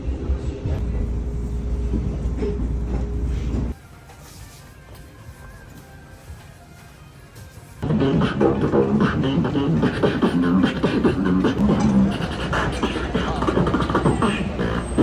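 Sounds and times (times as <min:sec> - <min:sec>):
rhythmic vocal music with beatbox: 0:07.8 - 0:15.0.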